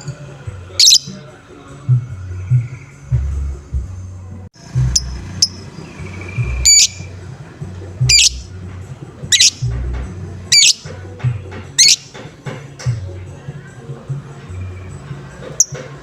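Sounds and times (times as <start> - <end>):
lovebird harsh calls: 0.8 - 1.2, 4.6 - 8.6, 9.2 - 11.0, 11.7 - 12.3
low thumping beat: 4.6 - 13.3.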